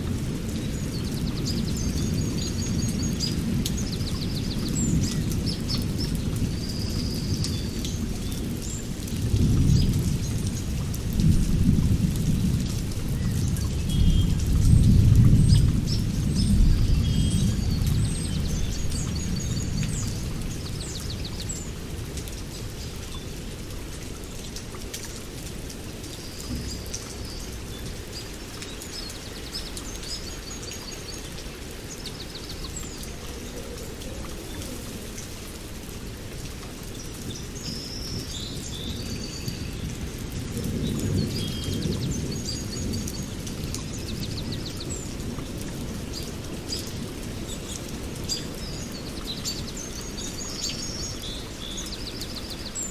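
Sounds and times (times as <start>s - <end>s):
low rumbles of thunder: 0.0s - 22.8s, 38.0s - 51.3s
rain falling: 0.0s - 52.9s.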